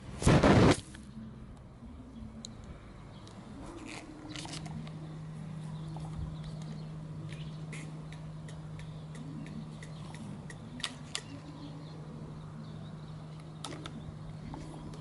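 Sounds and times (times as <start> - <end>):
motorcycle engine idling: 1.1 - 15.0
light irregular clicks: 5.9 - 11.4.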